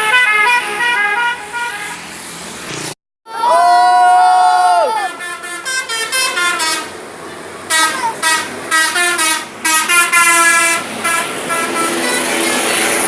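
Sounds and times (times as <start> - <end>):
musical bus air horn: 0.0 - 2.1, 5.0 - 7.0, 7.7 - 12.2.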